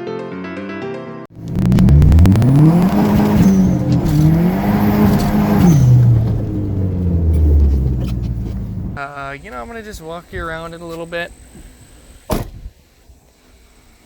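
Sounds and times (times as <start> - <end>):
car engine revving and idling: 1.4 - 9.0.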